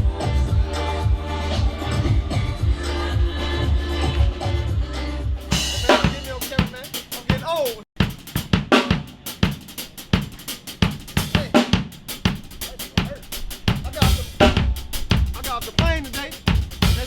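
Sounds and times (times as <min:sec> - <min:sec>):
drum kit playing: 0:00.0 - 0:17.0
voices talking: 0:05.7 - 0:07.8, 0:12.6 - 0:17.0.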